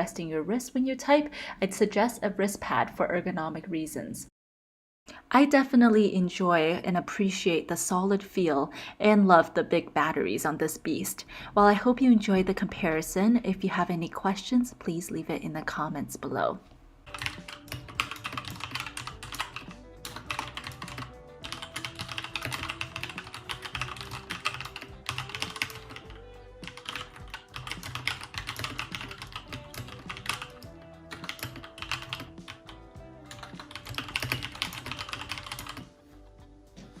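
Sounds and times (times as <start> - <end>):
soft background music: 0.0 - 4.2, 5.9 - 37.0
mechanical keyboard typing: 17.1 - 35.9.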